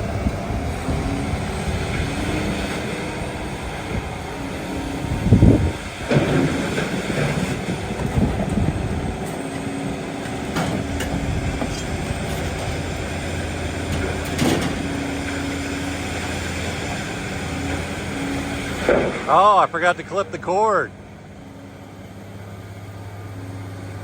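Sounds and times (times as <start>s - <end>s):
crane engine running: 0.0s - 24.0s
scrap metal clanking: 13.8s - 15.4s.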